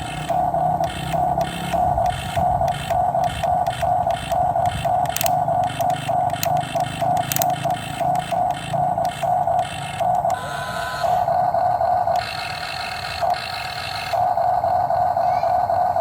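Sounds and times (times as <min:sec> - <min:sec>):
short sharp clicks: 0:00.0 - 0:10.4
low motor hum: 0:00.0 - 0:16.0
pulsing tone: 0:00.0 - 0:16.0.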